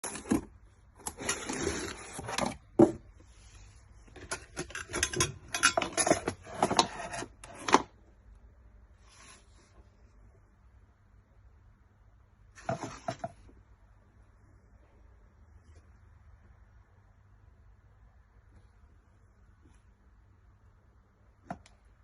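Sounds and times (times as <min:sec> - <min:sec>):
hard objects clicking and clattering: 0:04.1 - 0:07.9.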